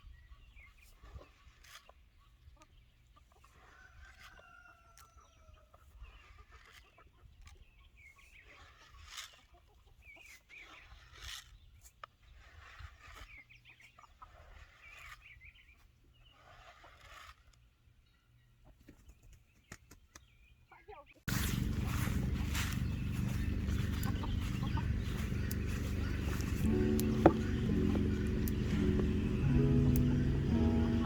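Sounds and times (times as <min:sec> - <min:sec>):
hens clucking and calling: 0:21.3 - 0:31.0.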